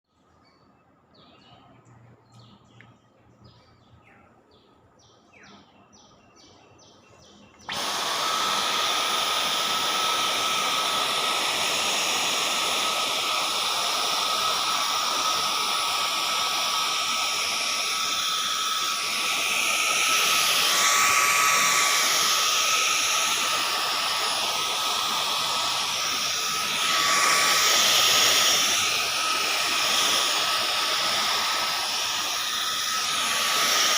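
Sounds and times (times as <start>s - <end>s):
faint bird chirps: 0.1s - 7.7s
vacuum cleaner running: 7.6s - 33.9s.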